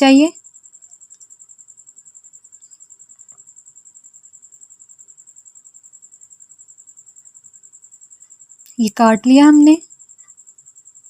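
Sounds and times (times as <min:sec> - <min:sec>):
cricket chirping: 0:00.0 - 0:11.0.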